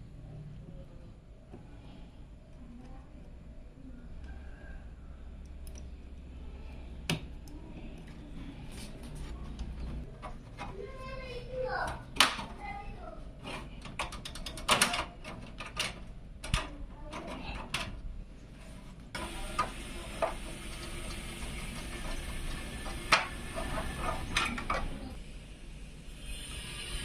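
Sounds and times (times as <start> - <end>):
steady hiss: 19.2 - 27.0.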